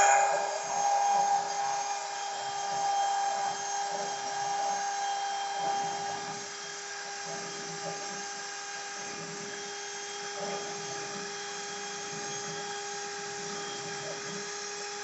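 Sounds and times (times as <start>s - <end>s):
rough hissing machine noise: 0.0s - 4.8s
router spindle high-pitched whine: 0.0s - 15.0s.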